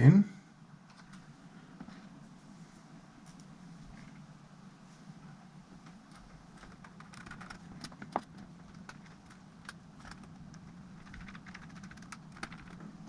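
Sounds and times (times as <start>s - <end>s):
faint steady hum: 0.0s - 13.0s
laptop parts clicking: 5.9s - 12.8s.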